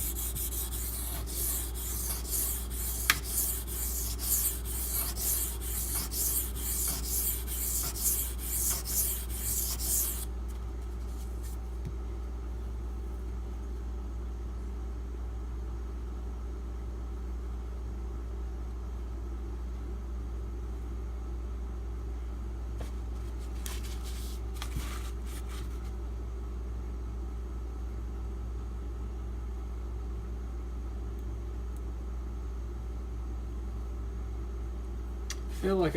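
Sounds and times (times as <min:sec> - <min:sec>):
knife scraping on whetstone: 0:00.0 - 0:10.3
steady low hum: 0:00.0 - 0:35.9.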